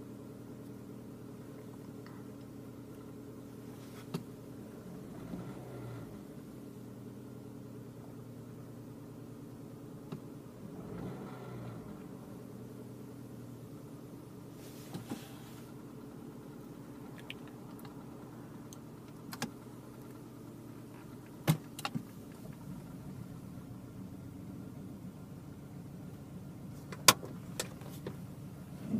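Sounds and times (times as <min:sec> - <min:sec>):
car engine idling roughly: 0:12.5 - 0:28.9.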